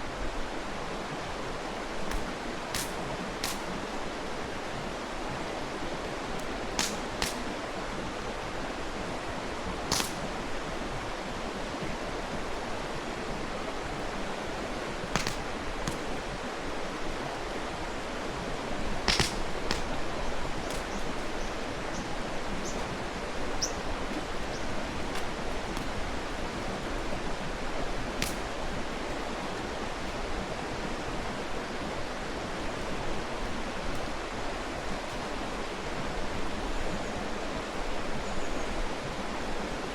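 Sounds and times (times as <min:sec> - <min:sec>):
mountain stream rushing: 0:00.0 - 0:39.9
campfire crackling: 0:01.3 - 0:11.6, 0:12.2 - 0:32.0.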